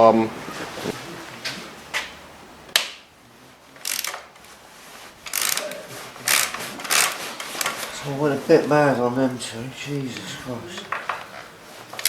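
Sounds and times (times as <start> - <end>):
hand tools scraping and rattling: 3.6 - 12.0.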